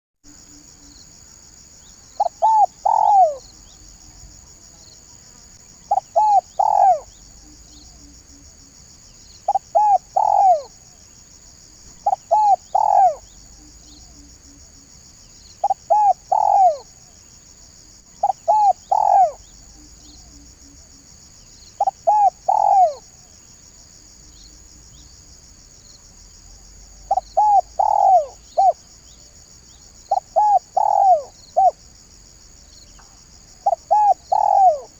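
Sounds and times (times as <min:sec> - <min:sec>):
dove cooing: 0:02.2 - 0:03.4, 0:05.8 - 0:07.7, 0:09.5 - 0:10.7, 0:11.9 - 0:13.9, 0:15.6 - 0:16.9, 0:18.2 - 0:20.2, 0:21.8 - 0:23.0, 0:27.1 - 0:28.8, 0:30.1 - 0:31.8, 0:33.6 - 0:34.9.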